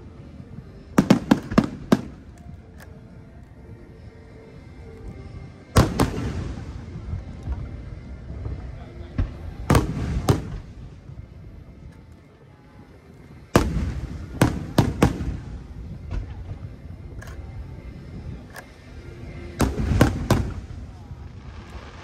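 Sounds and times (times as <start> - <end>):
firework shells bursting overhead: 1.0 - 2.8, 5.8 - 11.3, 13.5 - 17.6, 18.6 - 22.0.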